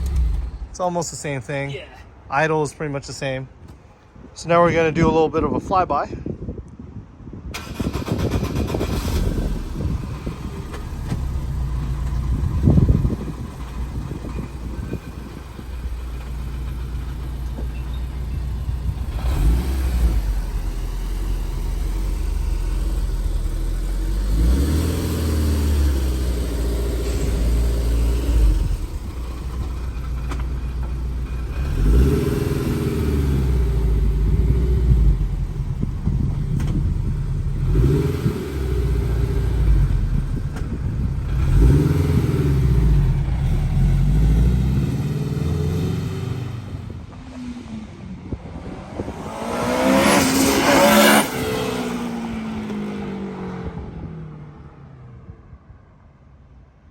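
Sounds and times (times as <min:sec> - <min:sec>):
car engine accelerating past: 0:41.3 - 0:54.8.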